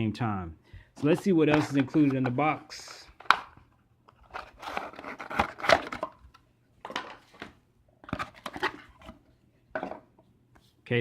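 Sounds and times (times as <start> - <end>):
packaging rustling: 4.2 - 6.2.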